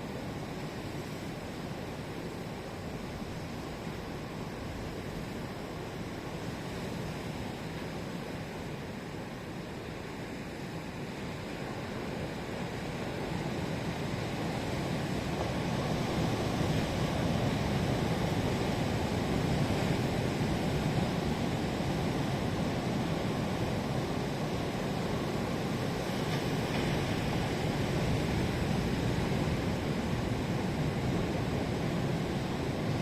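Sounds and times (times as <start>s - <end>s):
surf breaking on shore: 14.0s - 33.0s.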